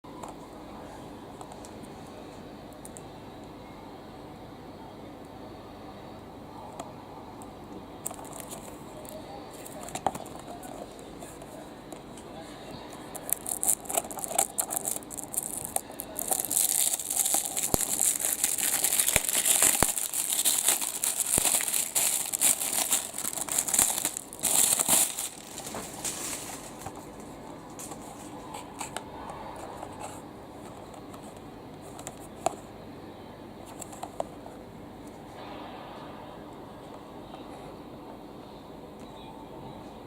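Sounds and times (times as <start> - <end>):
packaging crinkling and rustling: 8.0 - 29.0
packaging tearing: 13.1 - 27.0.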